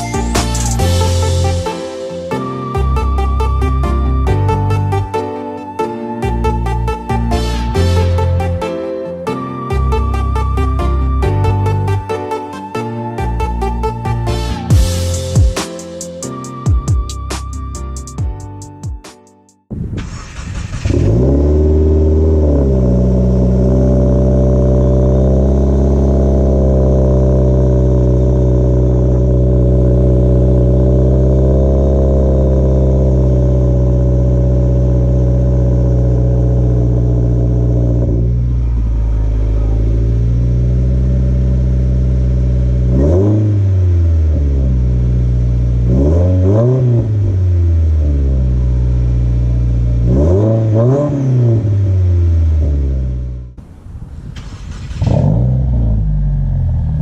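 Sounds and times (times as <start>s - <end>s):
car engine idling and revving: 20.0s - 57.0s.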